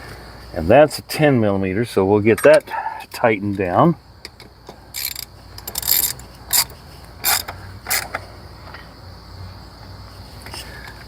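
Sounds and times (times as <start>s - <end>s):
ratchet wrench rasping: 4.9s - 8.2s.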